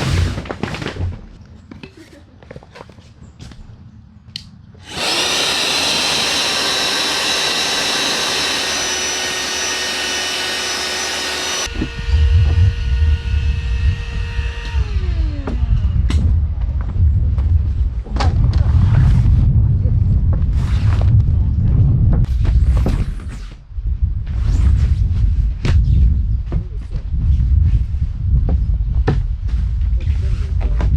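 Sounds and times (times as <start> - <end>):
electric motor whirring and whining: 4.8 - 16.2
heavy low rumble: 11.6 - 22.8.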